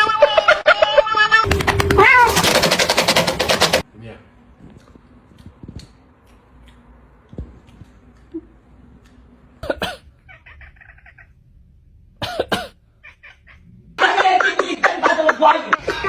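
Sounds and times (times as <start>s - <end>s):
cat calling: 1.1s - 3.8s, 10.3s - 11.4s
rapid short sounds: 1.5s - 3.8s.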